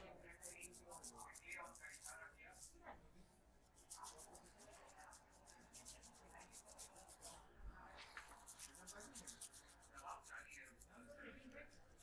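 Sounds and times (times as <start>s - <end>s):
hands rubbing hair: 0.3s - 2.7s.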